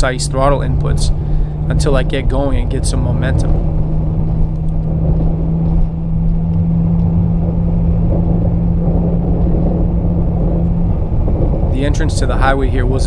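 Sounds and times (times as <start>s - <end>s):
tyres rumbling in snow: 0.0s - 5.1s, 10.4s - 13.0s
car engine droning: 0.0s - 8.2s, 9.8s - 13.0s.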